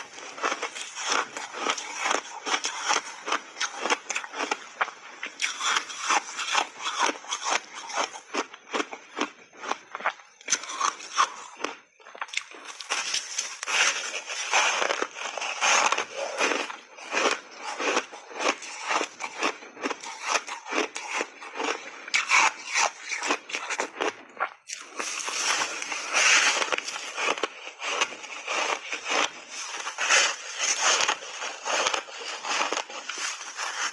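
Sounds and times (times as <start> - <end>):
crunching and chewing ice: 0.0 - 33.9.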